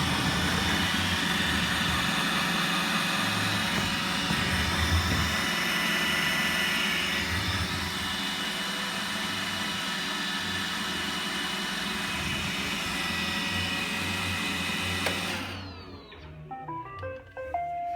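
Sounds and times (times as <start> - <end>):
robot vacuum running: 0.0 - 16.5
click: 15.0 - 15.2.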